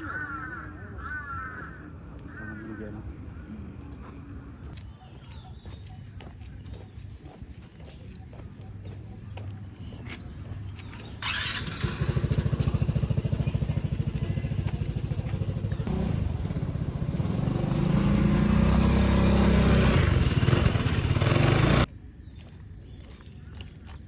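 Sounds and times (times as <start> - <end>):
small engine running: 11.2 - 21.9.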